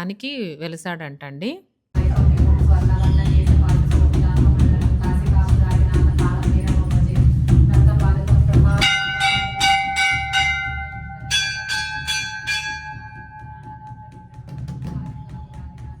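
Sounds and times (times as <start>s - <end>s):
metal bell ringing: 8.8s - 14.5s.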